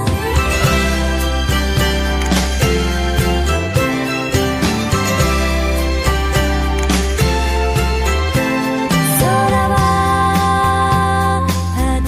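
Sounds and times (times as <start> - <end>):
background music with steady beat: 0.0 - 12.0.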